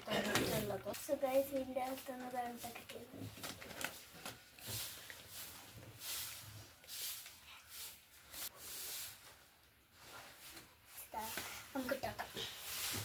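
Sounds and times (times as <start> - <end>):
plastic packaging crinkling: 1.6 - 5.2.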